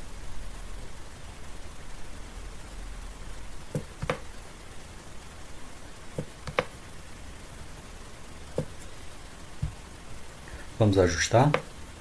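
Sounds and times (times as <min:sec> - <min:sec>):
computer mouse clicking: 0:03.8 - 0:04.2, 0:06.2 - 0:06.7.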